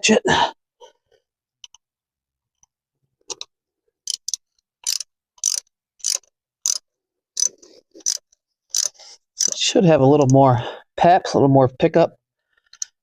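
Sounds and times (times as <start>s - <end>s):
socket ratchet clicking: 4.1s - 9.6s.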